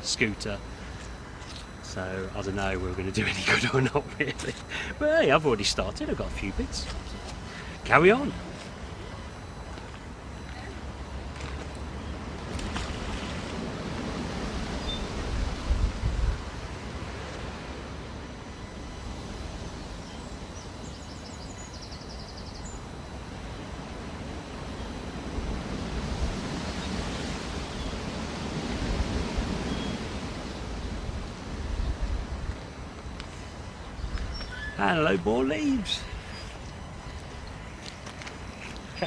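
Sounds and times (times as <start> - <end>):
steady outdoor hiss: 0.0 - 39.0
wind rumbling on microphone: 0.0 - 39.0.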